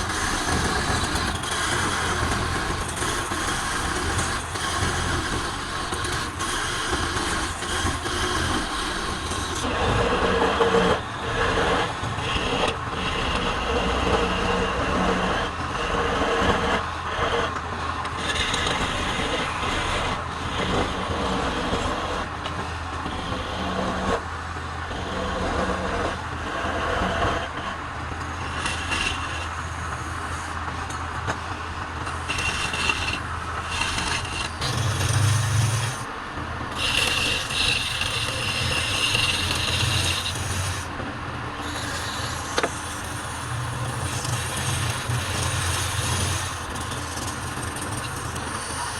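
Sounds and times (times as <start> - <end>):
turning tool scraping wood: 0.0 - 24.3, 24.9 - 48.9
lathe motor hum: 0.0 - 48.9.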